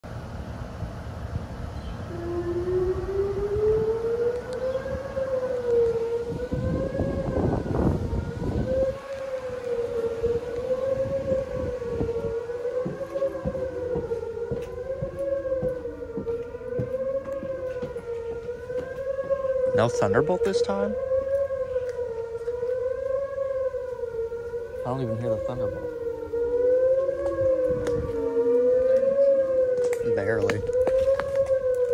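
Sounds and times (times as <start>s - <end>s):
warning siren wailing: 0.0s - 31.9s
lower siren tone sliding down: 0.8s - 31.9s
wind buffeting microphone: 0.9s - 31.9s.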